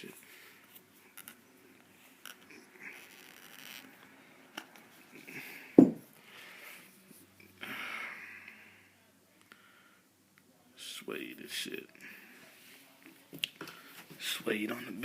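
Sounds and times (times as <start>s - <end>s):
loud thump: 5.8s - 6.0s.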